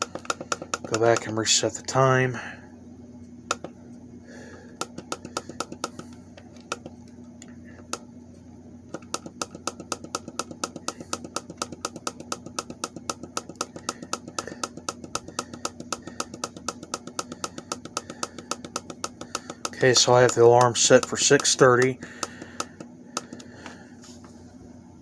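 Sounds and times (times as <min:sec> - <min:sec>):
low steady hum: 0:00.0 - 0:25.0
alarm clock buttons clicking: 0:09.0 - 0:23.5.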